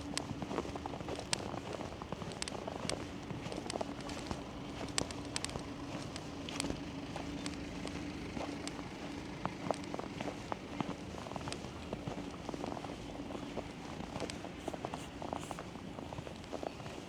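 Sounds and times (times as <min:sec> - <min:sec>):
city background hum: 0:00.0 - 0:17.0
footsteps crunching on snow: 0:00.0 - 0:17.0.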